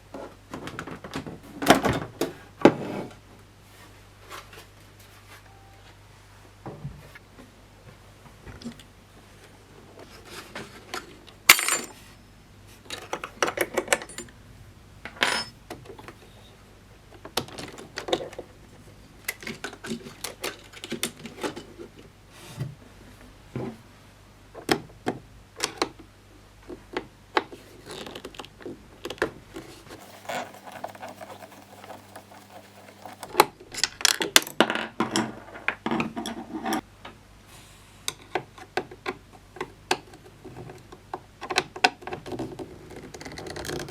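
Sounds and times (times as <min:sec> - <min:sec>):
clicks and clinks of parts handled: 0:11.0 - 0:12.0.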